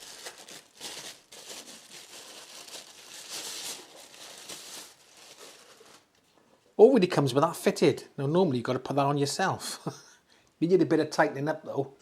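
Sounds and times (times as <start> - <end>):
plastic packaging crinkling: 0.0 - 6.2.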